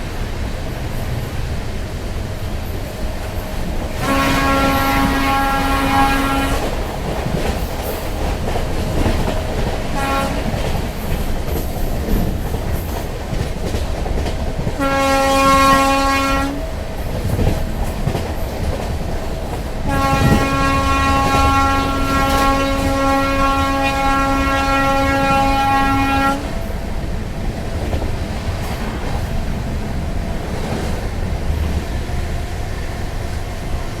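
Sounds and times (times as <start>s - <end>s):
clickety-clack on rails: 0.0s - 34.0s
train rumble: 0.0s - 34.0s
locomotive air horn: 4.0s - 6.8s, 9.9s - 10.6s, 14.8s - 16.7s, 19.8s - 26.6s.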